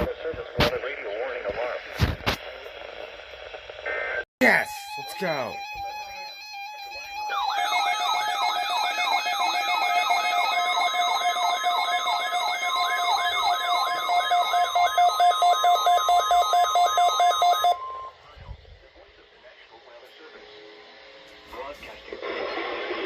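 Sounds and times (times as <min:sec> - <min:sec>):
steady and pulsing beep tones: 0:04.4 - 0:18.2
siren of falling whoops: 0:05.5 - 0:18.1.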